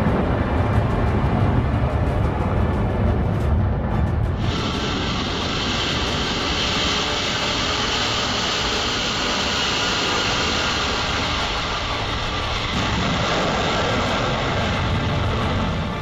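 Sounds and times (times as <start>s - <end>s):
jet engine rushing: 0.0s - 16.0s
high hiss: 4.4s - 16.0s.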